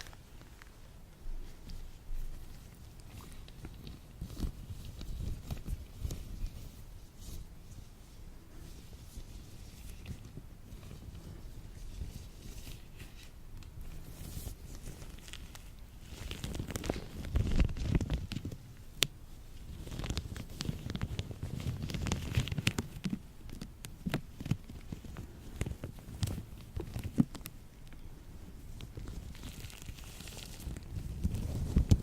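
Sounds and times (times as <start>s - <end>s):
latex gloves rubbing together: 0.0s - 18.4s
sticky clicks and crackles: 13.6s - 28.0s, 28.8s - 32.0s.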